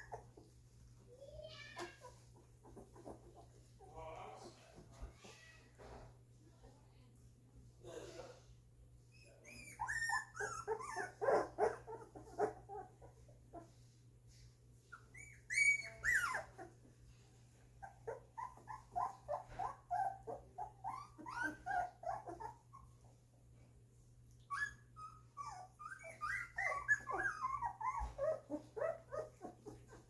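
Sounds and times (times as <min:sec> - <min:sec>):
puppies whimpering and squeaking: 0:00.0 - 0:00.6, 0:01.8 - 0:03.6, 0:08.8 - 0:13.8, 0:14.8 - 0:17.0, 0:17.7 - 0:23.1, 0:24.2 - 0:30.0.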